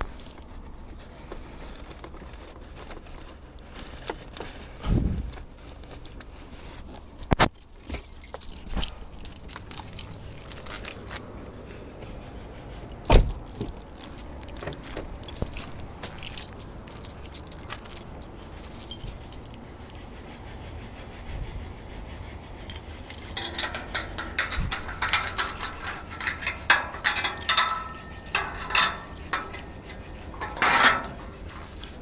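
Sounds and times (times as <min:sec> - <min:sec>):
faint low rumble: 0:04.7 - 0:06.3.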